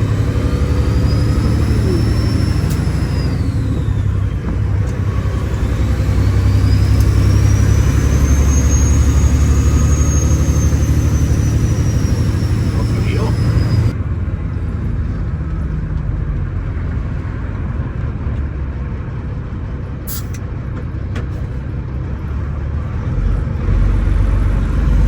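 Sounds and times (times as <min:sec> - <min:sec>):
truck diesel engine pulling: 0:00.0 - 0:25.0
turbo whistle: 0:06.7 - 0:13.9.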